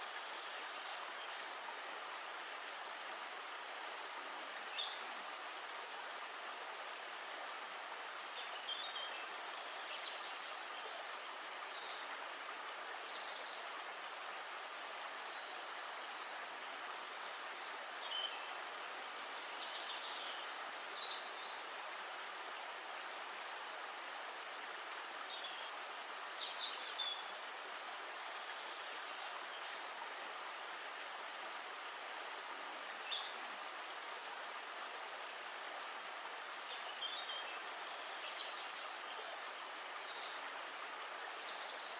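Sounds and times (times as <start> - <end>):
river water flowing: 0.0 - 41.9.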